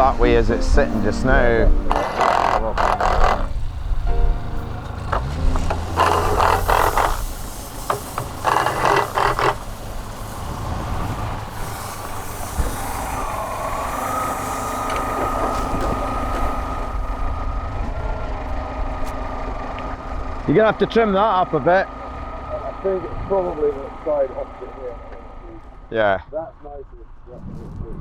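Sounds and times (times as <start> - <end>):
short noisy bursts: 0.0 - 17.2
heavy machinery running: 0.0 - 25.9
steady machine whine: 0.0 - 25.9.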